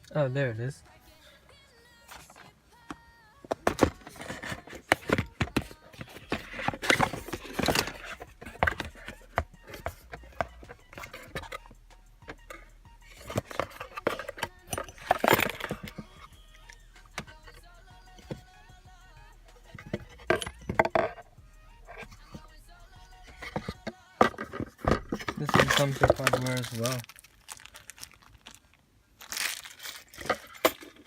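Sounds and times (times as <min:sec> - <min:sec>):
packaging rustling: 0:03.5 - 0:11.7, 0:13.2 - 0:16.1, 0:23.3 - 0:31.0
small metal parts rattling: 0:03.6 - 0:17.7, 0:19.7 - 0:21.3, 0:23.2 - 0:31.0.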